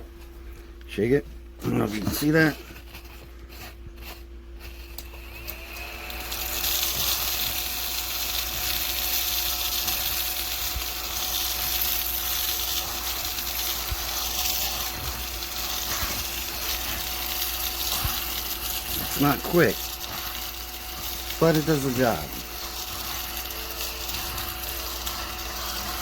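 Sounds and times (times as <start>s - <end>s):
vacuum cleaner whine: 0.0s - 26.0s
loud suction hiss: 6.4s - 26.0s.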